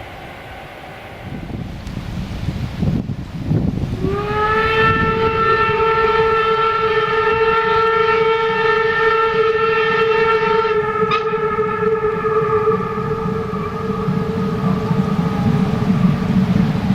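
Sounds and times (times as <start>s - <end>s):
train rumbling: 0.0s - 16.9s
steam locomotive whistle: 3.9s - 16.9s.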